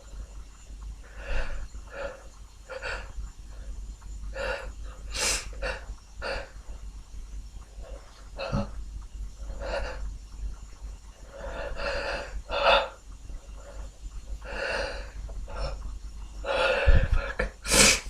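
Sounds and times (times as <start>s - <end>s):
person sniffling: 16.5s - 18.0s.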